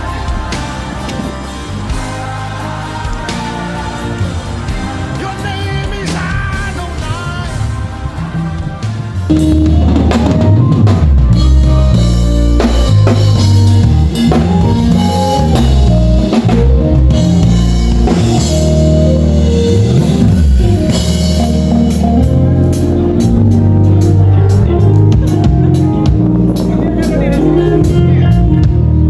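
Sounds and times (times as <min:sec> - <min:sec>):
live band playing loud: 0:00.0 - 0:29.0
heavy low bass line: 0:09.2 - 0:29.0.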